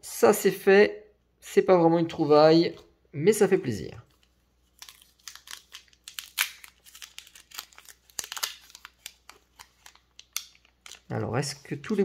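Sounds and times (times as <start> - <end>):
foil wrapper crinkling and tearing: 4.1 - 11.2.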